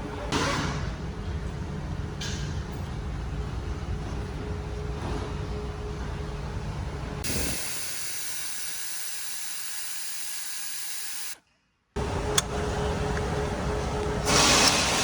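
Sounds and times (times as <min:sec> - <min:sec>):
steady hissing noise: 0:07.2 - 0:11.4.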